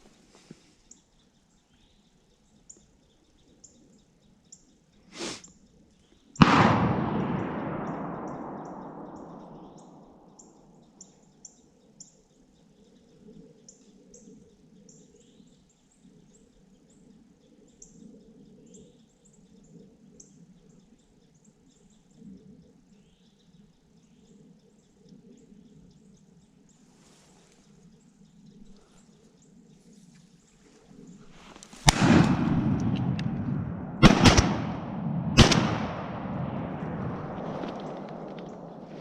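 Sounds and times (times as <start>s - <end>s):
small birds chirping: 0.0s - 6.4s, 8.3s - 32.0s
shotgun report echo: 6.4s - 10.4s, 31.3s - 39.0s.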